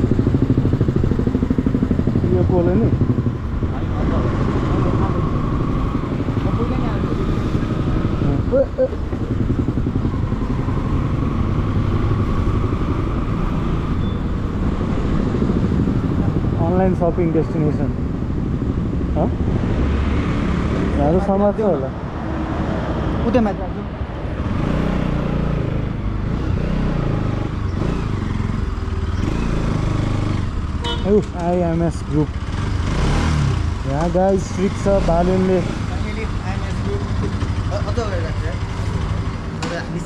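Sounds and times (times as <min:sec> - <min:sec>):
wind noise: 0:00.0 - 0:21.2
motorcycle engine running: 0:00.0 - 0:22.2, 0:23.4 - 0:39.6
road rumble: 0:00.0 - 0:40.0.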